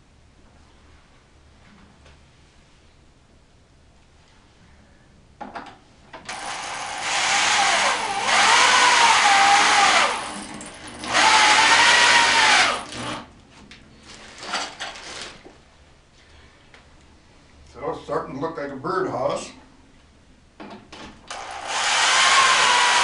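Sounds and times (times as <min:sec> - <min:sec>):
power drill running: 0:06.3 - 0:13.3, 0:21.3 - 0:23.0.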